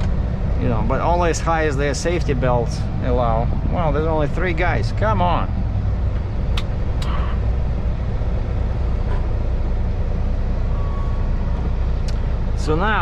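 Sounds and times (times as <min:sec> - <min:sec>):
truck diesel engine running: 0:00.0 - 0:13.0
sharp clicks: 0:06.5 - 0:07.2.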